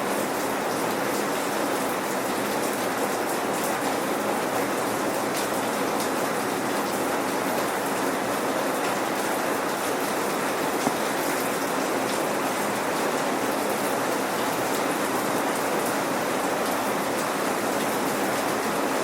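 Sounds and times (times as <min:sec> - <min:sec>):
steady rain on a hard surface: 0:00.0 - 0:19.0.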